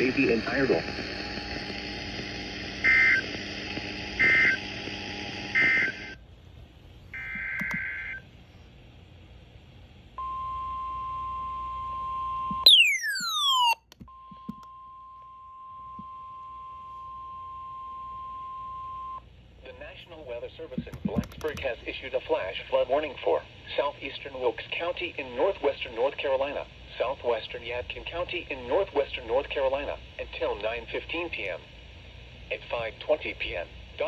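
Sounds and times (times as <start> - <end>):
steady alert tone: 12.7 - 13.8.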